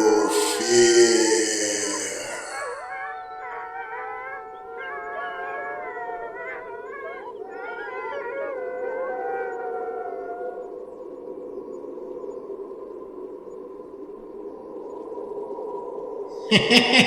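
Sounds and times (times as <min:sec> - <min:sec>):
steady low drone: 0:00.0 - 0:02.6
wolves howling: 0:00.0 - 0:10.7.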